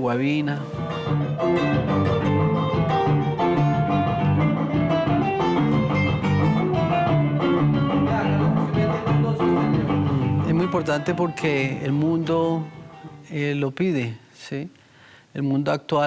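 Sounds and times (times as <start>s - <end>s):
plucked guitar notes: 0.6s - 13.4s.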